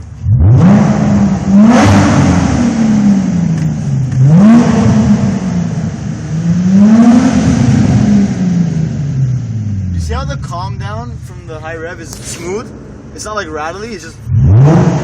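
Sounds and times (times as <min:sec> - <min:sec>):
car engine revving: 0:00.0 - 0:15.0.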